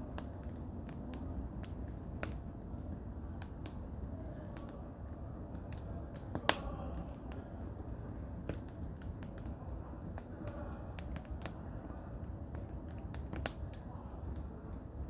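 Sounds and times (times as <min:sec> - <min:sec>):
firewood crackling and popping: 0:00.0 - 0:15.0
low rumble of wind: 0:00.0 - 0:15.0.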